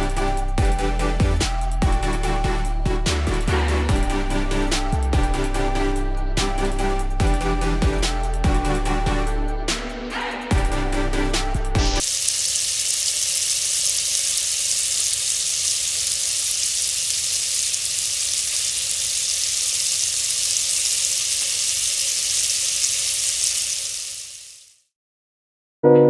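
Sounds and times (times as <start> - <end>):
melting ice fizzing and crackling: 12.0 - 24.8.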